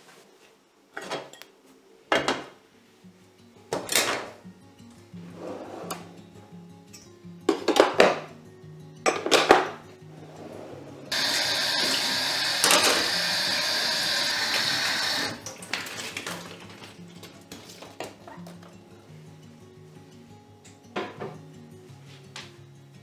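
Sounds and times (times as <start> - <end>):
soft background music: 2.4 - 23.0
kitchen utensils clattering: 9.1 - 14.1.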